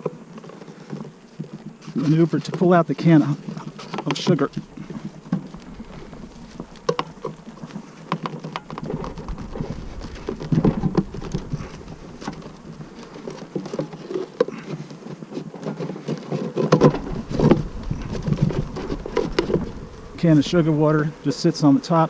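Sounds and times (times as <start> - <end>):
honeybees buzzing: 0.0 - 22.0
clicks knocks and scrapes on wood: 3.2 - 19.8.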